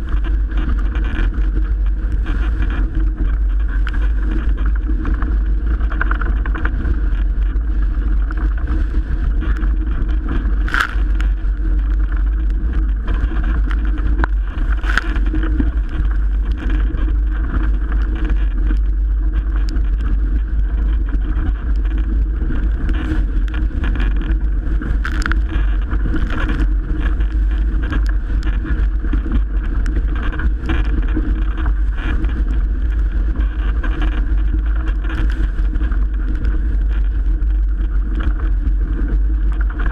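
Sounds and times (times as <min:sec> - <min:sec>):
wind buffeting microphone: 0:00.0 - 0:39.9
rushing water: 0:02.3 - 0:28.6.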